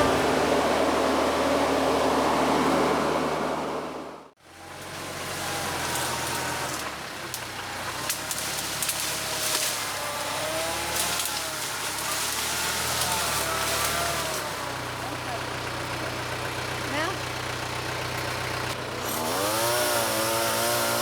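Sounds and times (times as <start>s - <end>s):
tractor diesel engine running: 0.0s - 21.0s
sharp clicks and cracks: 6.8s - 10.0s.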